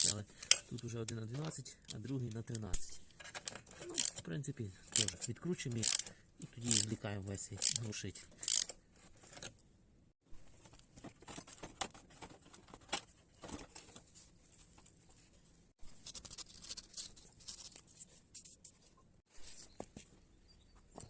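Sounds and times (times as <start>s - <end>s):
metallic clicks of hand tools: 0.0s - 4.3s, 4.9s - 6.1s, 7.6s - 8.8s.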